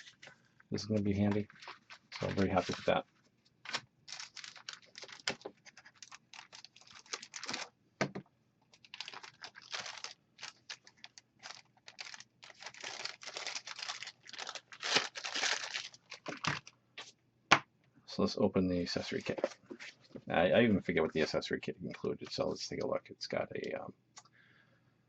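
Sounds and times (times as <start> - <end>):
packaging rustling and clicking: 1.2 - 3.0, 3.7 - 7.7, 8.7 - 16.7.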